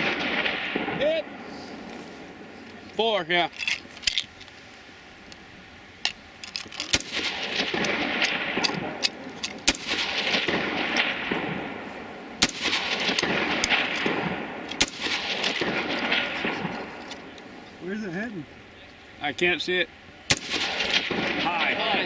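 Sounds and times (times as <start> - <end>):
loud rifle shots: 0.0 - 1.5, 6.8 - 17.0, 20.3 - 22.0.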